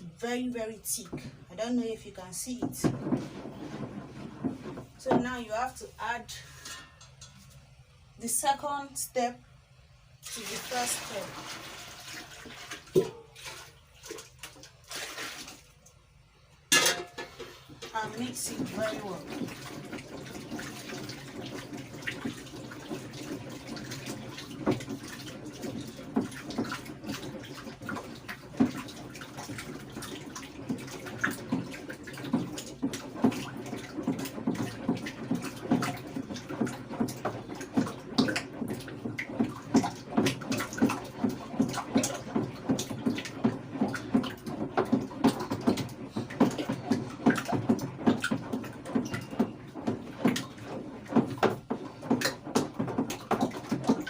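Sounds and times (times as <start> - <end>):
thick mixture sloshing: 0.0 - 8.1, 10.2 - 54.0
stirrer knocking container side: 2.4 - 5.8, 16.7 - 54.0.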